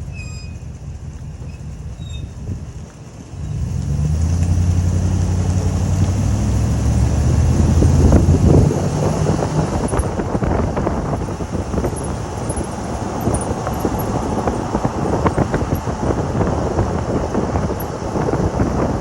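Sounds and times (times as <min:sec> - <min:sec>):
tyre and road noise: 0:00.0 - 0:19.0
wind buffeting microphone: 0:04.4 - 0:19.0.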